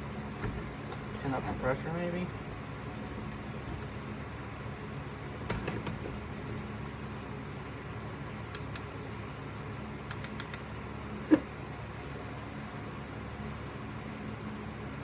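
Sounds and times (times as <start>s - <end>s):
faint steady hum: 0.0s - 15.0s
stapler clicking: 10.1s - 10.6s.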